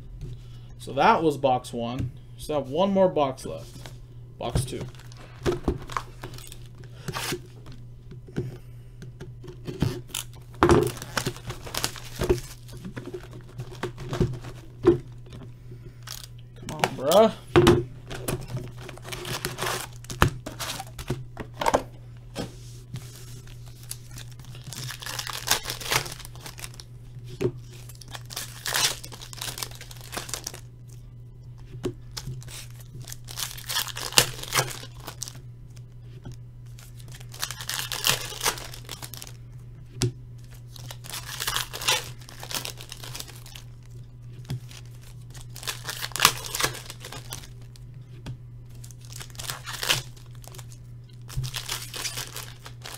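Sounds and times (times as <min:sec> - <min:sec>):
steady low hum: 0:00.0 - 0:52.9
wrapping torn and crinkled: 0:04.7 - 0:07.8, 0:09.6 - 0:15.3, 0:16.0 - 0:17.3, 0:18.0 - 0:21.1, 0:22.9 - 0:26.9, 0:27.6 - 0:31.0, 0:32.1 - 0:35.4, 0:36.6 - 0:39.4, 0:40.4 - 0:47.9, 0:48.7 - 0:52.9.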